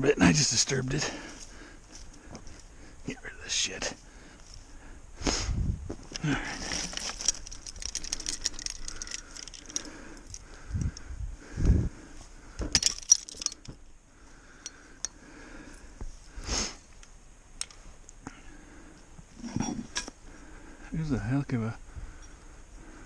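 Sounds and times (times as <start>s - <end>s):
light metal jangling and clinking: 6.6s - 10.9s, 12.7s - 13.7s.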